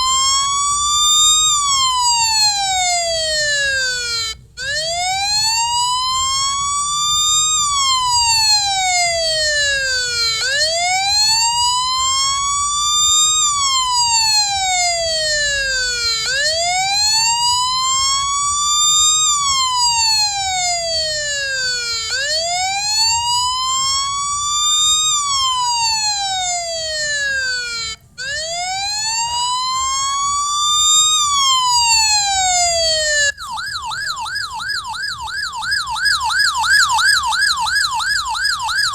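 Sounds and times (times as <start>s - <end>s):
siren fast yelp: 0.0s - 38.9s
siren wailing: 0.0s - 38.9s.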